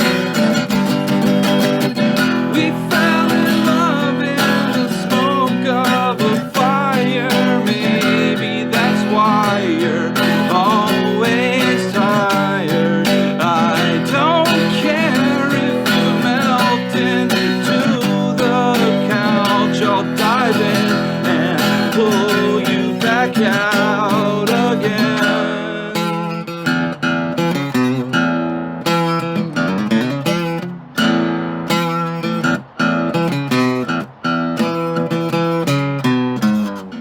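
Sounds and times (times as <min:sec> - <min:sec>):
acoustic guitar strumming: 0:00.0 - 0:37.0
person singing: 0:01.8 - 0:26.5.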